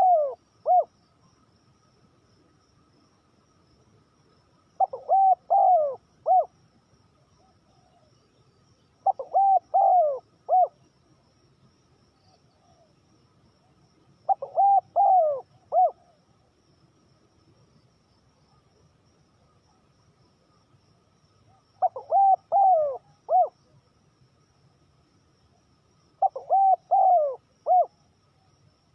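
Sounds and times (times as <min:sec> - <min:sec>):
dove cooing: 0:00.0 - 0:00.9, 0:04.8 - 0:06.5, 0:07.4 - 0:08.2, 0:09.0 - 0:10.8, 0:14.3 - 0:16.2, 0:21.5 - 0:23.6, 0:26.2 - 0:28.0.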